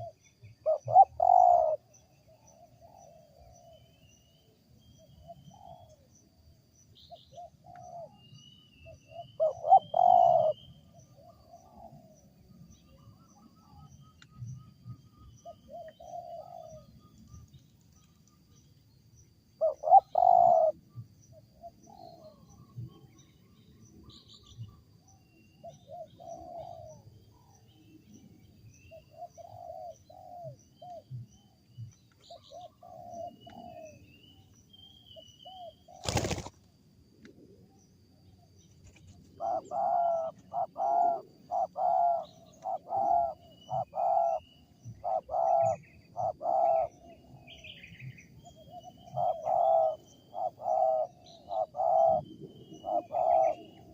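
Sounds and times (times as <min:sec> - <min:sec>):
dove cooing: 0:00.0 - 0:01.9, 0:09.0 - 0:12.2, 0:15.4 - 0:16.9, 0:19.6 - 0:20.8, 0:25.6 - 0:27.0, 0:29.1 - 0:31.2, 0:32.3 - 0:34.0, 0:39.4 - 0:53.9
faint small bird chirps: 0:00.0 - 0:36.5, 0:37.7 - 0:53.9.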